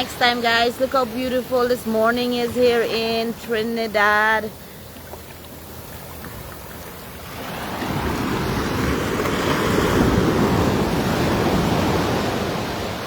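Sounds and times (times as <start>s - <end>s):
sea wave breaking: 5.9s - 13.0s.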